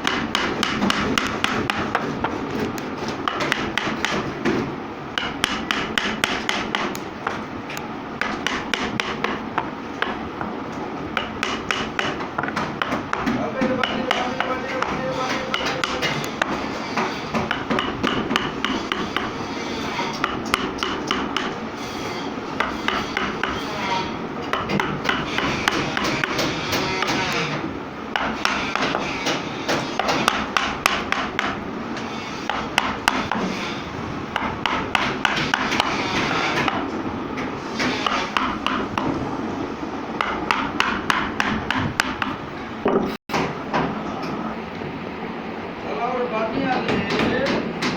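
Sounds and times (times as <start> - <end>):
rapid tapping and knocking: 0.0 - 7.5, 8.2 - 19.4, 24.4 - 27.4, 34.4 - 39.2, 40.2 - 43.9.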